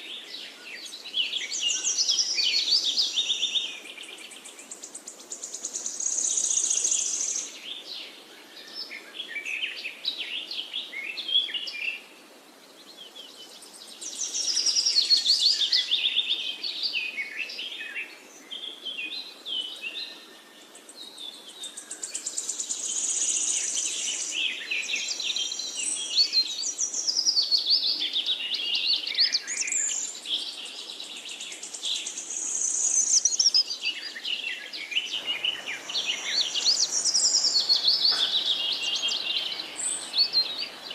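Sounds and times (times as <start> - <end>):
small birds chirping: 12.7 - 40.9.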